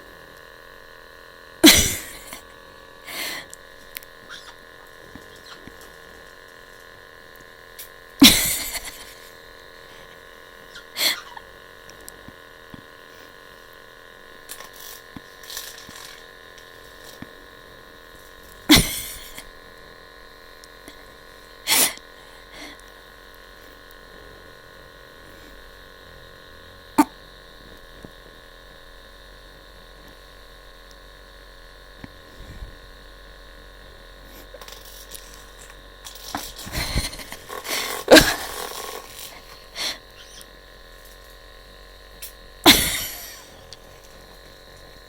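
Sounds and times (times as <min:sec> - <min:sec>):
faint steady hum: 0:00.0 - 0:45.0
bird sneezing: 0:04.3 - 0:04.6, 0:10.8 - 0:11.4, 0:18.7 - 0:19.4, 0:21.7 - 0:22.0, 0:39.8 - 0:40.4.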